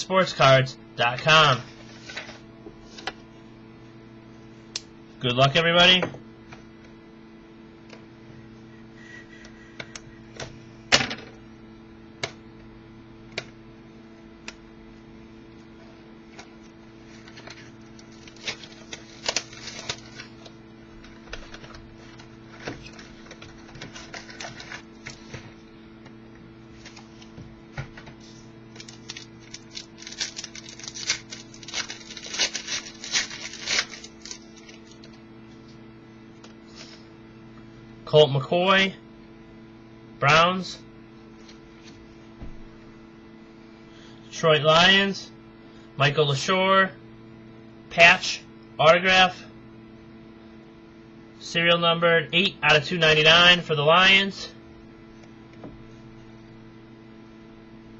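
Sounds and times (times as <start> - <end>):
electrical hum: 0.0 - 57.9
packaging crinkling and rustling: 17.1 - 25.3, 28.7 - 35.2.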